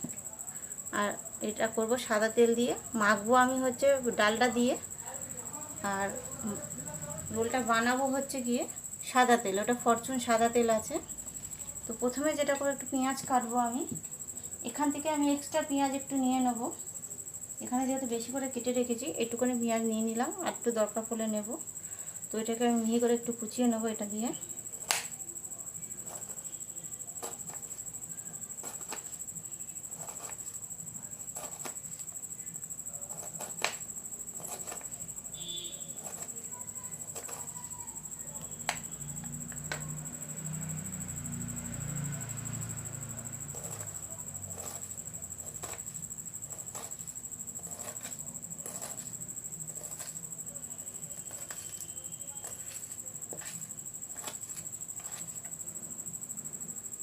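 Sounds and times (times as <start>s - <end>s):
high-pitched whine: 37.6s - 47.5s.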